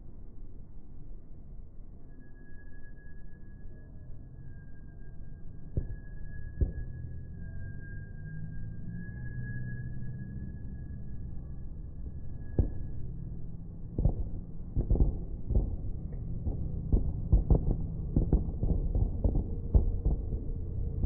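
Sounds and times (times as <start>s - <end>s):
low rumble: 0.0s - 21.0s
slowed firework thuds: 13.8s - 21.0s.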